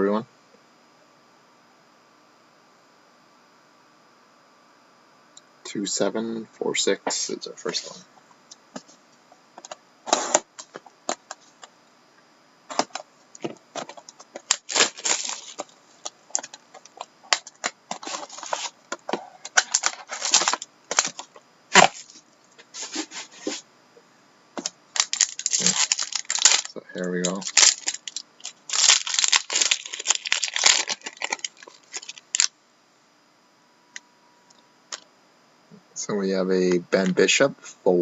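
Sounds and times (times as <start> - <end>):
plastic wrap crackling: 13.8 - 18.8, 19.4 - 22.1, 24.9 - 32.5.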